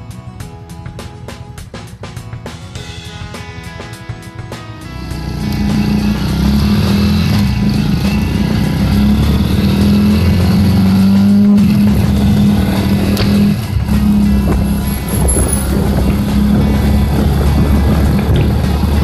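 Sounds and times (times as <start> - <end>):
small motorcycle engine running: 4.8 - 19.0.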